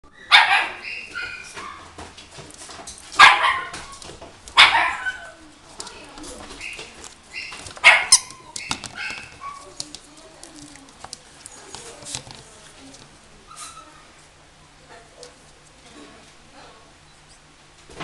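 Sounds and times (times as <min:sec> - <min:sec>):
puppy barking sharply: 0:00.3 - 0:01.8, 0:03.2 - 0:03.8, 0:04.6 - 0:05.2, 0:07.4 - 0:08.4
high-pitched puppy yips: 0:06.6 - 0:09.6.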